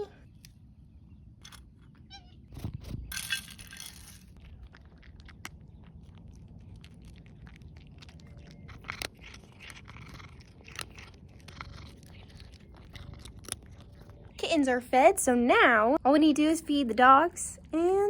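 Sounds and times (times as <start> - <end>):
kittens crunching dry food: 1.3 - 15.4.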